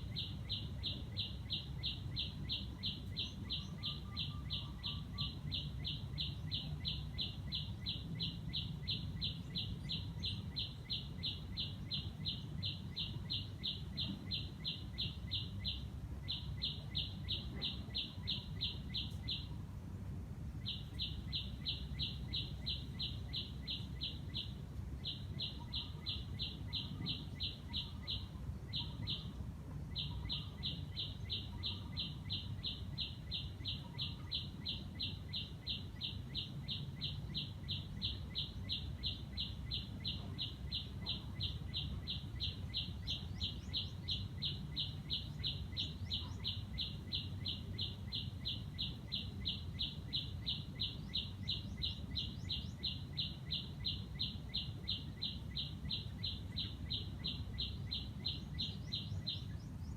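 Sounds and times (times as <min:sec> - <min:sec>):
lower bird calls: 0:00.0 - 0:19.8, 0:20.4 - 0:59.9.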